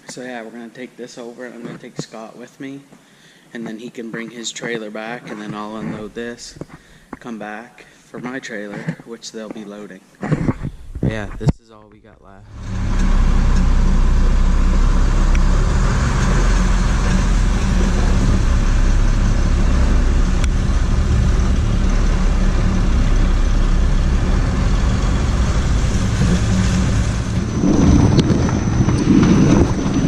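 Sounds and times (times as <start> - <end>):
road noise: 12.3 - 30.0
truck engine running: 12.5 - 30.0.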